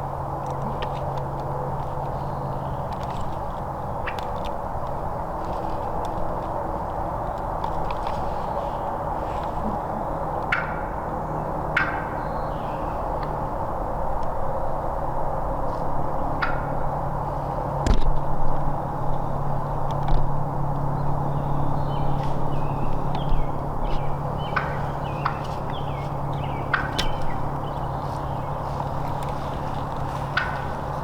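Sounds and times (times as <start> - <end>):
turkey calls: 8.0 - 13.6, 16.3 - 17.8, 21.0 - 31.0.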